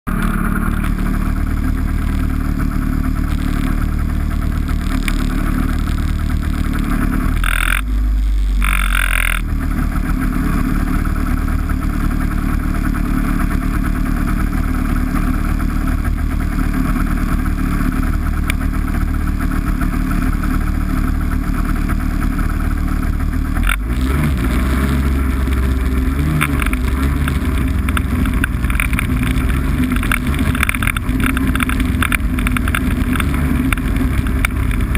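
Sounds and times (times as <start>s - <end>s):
vehicle engine running: 0.0s - 34.9s
sharp click: 4.7s - 7.9s, 8.5s - 9.4s.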